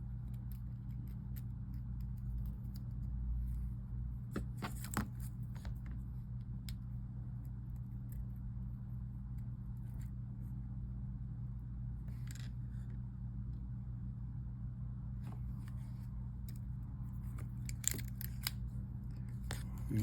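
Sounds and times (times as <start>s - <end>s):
steady electrical hum: 0.0s - 20.0s.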